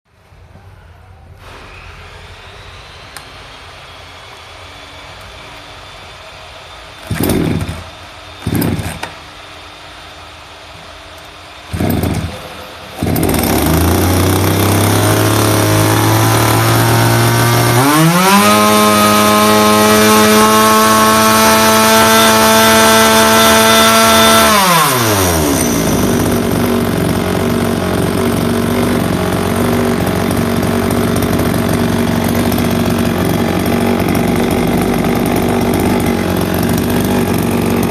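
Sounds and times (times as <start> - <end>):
chainsaw engine idling and revving: 7.0 - 9.2, 11.7 - 37.9
chainsaw pull-start: 7.0 - 9.2, 11.7 - 37.9.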